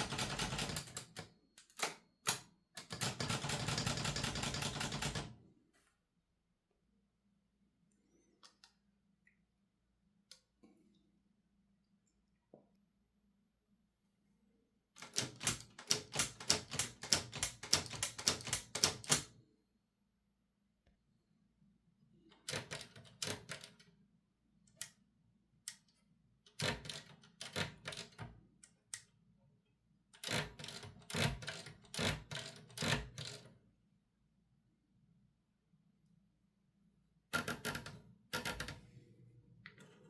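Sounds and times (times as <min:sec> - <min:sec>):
typewriter keys clicking: 0:00.0 - 0:05.3, 0:15.0 - 0:19.3, 0:26.6 - 0:28.2, 0:30.2 - 0:33.4.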